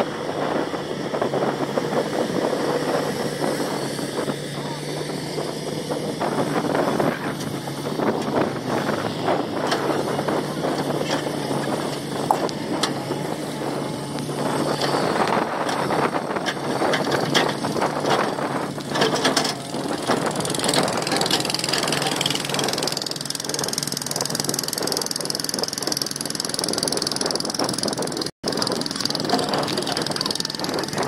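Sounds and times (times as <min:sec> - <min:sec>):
excavator diesel engine running: 0:00.0 - 0:31.0
metallic clanks and knocks: 0:16.4 - 0:19.7.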